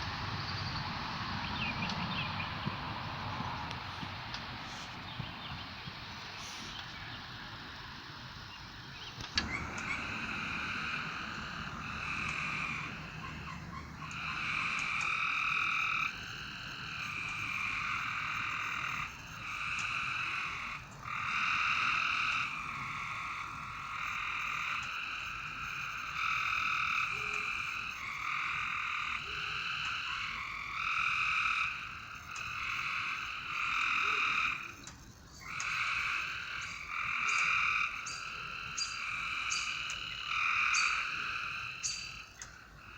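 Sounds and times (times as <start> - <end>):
chorus of frogs calling: 0.0 - 42.9.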